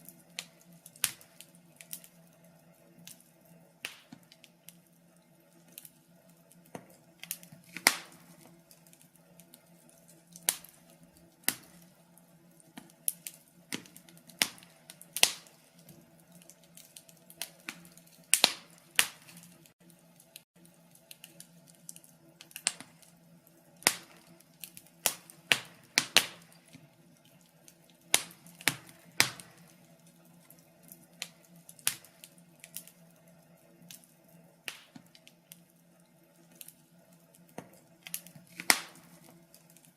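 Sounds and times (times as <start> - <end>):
faint steady hum: 0.0 - 39.9
wood fire crackling: 0.0 - 39.9.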